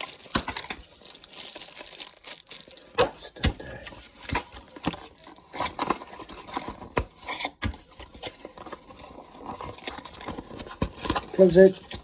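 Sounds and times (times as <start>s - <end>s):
packaging crinkling: 0.0s - 7.0s.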